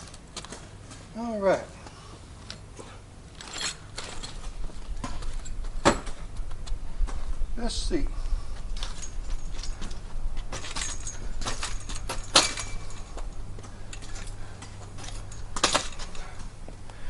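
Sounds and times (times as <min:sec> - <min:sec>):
metal frame parts clinking: 0:03.3 - 0:06.2, 0:08.7 - 0:16.5.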